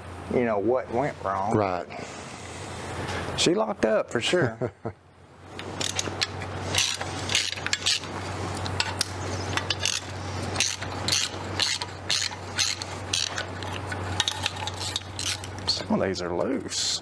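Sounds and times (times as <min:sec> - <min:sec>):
steady low hum: 0:00.0 - 0:17.0
wrenches clicking against metal: 0:05.5 - 0:16.0.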